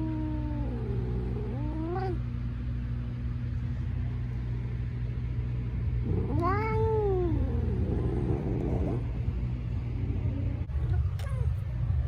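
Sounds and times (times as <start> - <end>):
cat meowing: 0.0 - 2.2, 6.1 - 9.0
steady low hum: 0.0 - 12.0.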